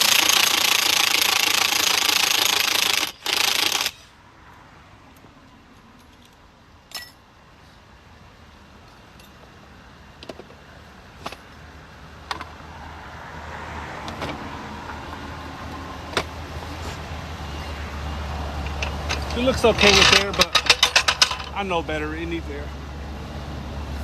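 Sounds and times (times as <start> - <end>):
low vehicle rumble: 3.9 - 24.0
metal tools clinking: 5.8 - 7.2, 18.6 - 21.7.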